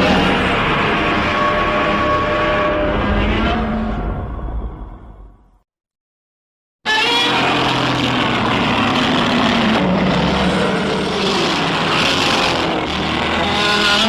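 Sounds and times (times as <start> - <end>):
monster roar: 7.3 - 14.0.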